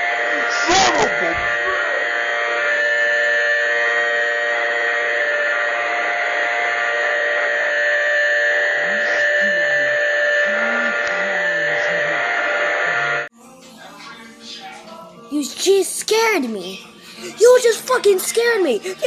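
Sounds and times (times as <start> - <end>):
electronic alarm drone: 0.0 - 13.3
low wavering tones: 0.0 - 13.3.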